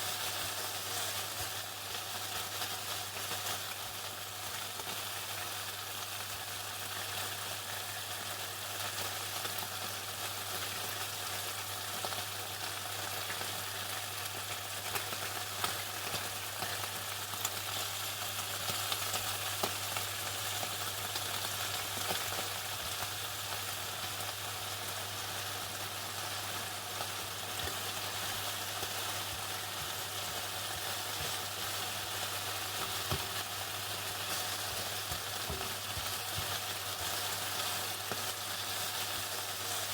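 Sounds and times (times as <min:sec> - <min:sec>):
chicken sizzling in hot oil: 0:00.0 - 0:39.9.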